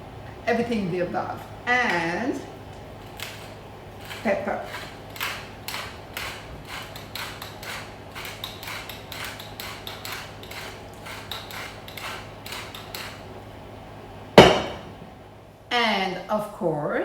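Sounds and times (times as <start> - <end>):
pepper mill grinding: 3.0 - 13.2.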